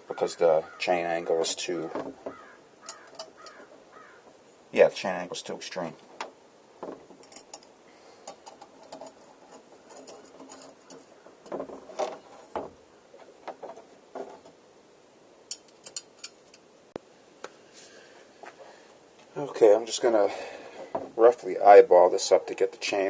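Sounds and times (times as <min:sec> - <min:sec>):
small metallic knocks of tools: 0:01.9 - 0:03.7.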